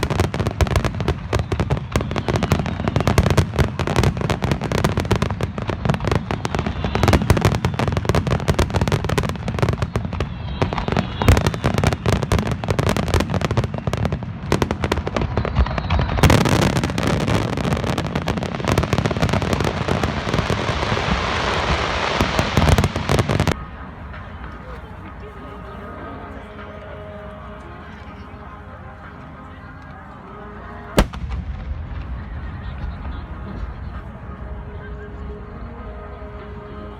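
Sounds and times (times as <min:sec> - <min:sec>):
fireworks bursting: 0:00.0 - 0:23.7, 0:31.0 - 0:34.3
dense crackle of fireworks: 0:00.0 - 0:25.1, 0:30.3 - 0:36.9.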